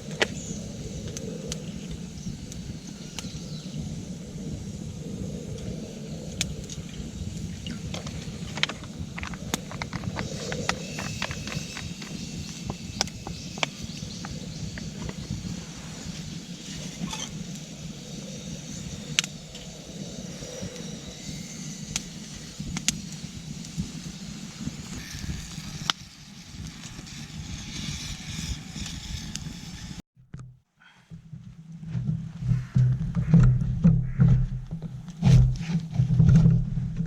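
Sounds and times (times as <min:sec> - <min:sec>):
campfire crackling and popping: 0:00.0 - 0:03.6, 0:04.2 - 0:27.4.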